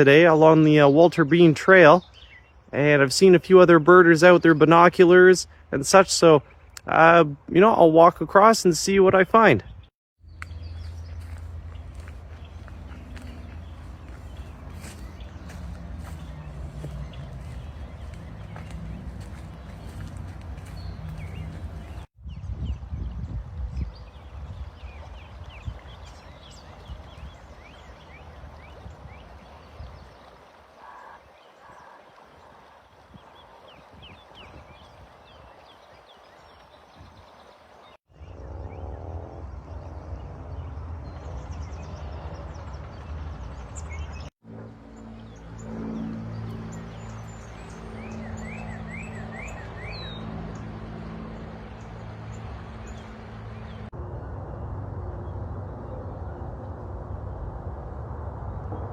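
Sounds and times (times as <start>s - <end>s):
songbirds calling: 0.0s - 54.0s
birds chirping and singing: 0.2s - 5.5s, 8.9s - 30.2s, 30.8s - 37.4s, 44.9s - 53.9s.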